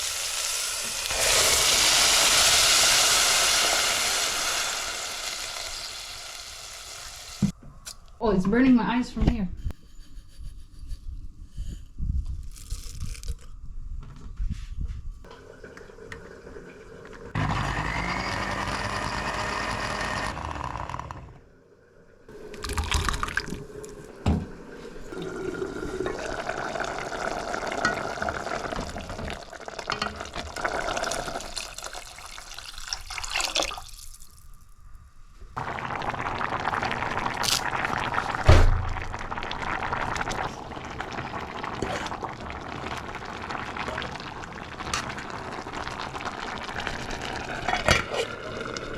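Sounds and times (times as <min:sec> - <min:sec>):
liquid pouring and splashing: 0:22.3 - 0:24.3, 0:24.9 - 0:34.6.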